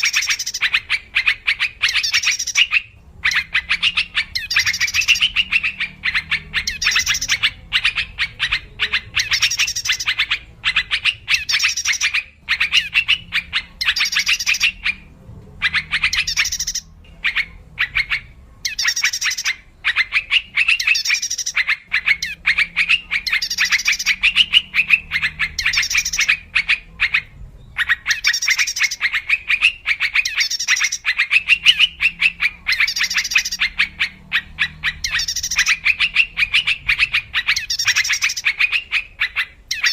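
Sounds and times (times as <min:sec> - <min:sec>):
bulbuls bubbly chattering calls: 0:00.0 - 0:39.9.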